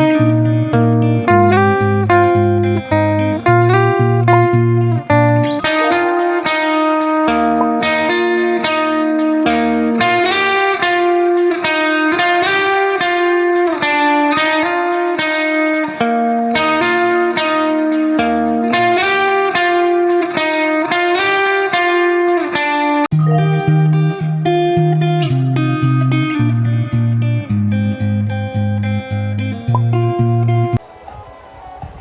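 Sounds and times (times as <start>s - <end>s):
low bass notes: 0.0s - 6.0s, 23.1s - 30.8s
plucked guitar run: 0.0s - 19.6s, 23.1s - 30.8s.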